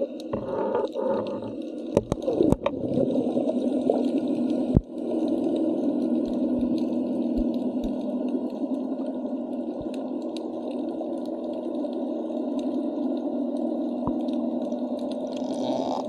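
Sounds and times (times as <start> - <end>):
low underwater hum: 0.0 - 16.0
faint clicks: 3.4 - 16.0.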